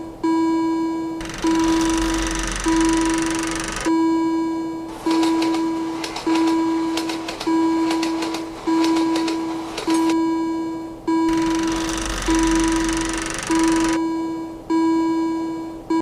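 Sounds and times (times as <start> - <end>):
crossing warning bell dinging: 4.9 - 10.2.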